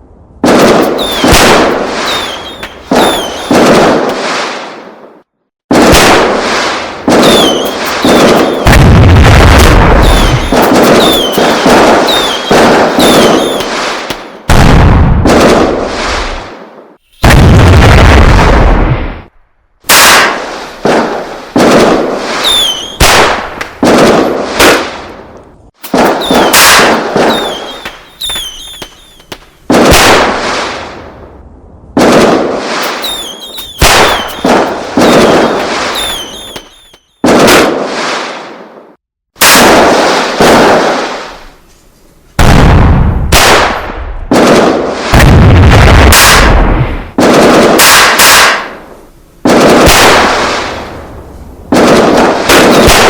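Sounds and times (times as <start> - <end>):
high falling whistles: 0.9 - 1.4, 2.0 - 3.6, 7.2 - 8.7, 10.0 - 13.8, 22.4 - 23.0, 26.0 - 29.4, 32.8 - 37.2.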